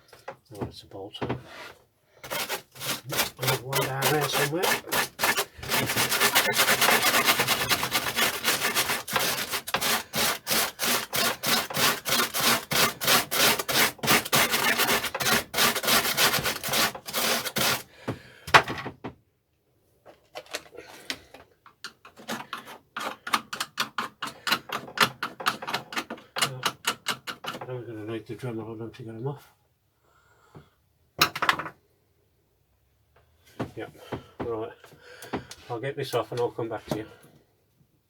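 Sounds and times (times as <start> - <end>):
wire brush scrubbing steel: 2.2 - 17.8.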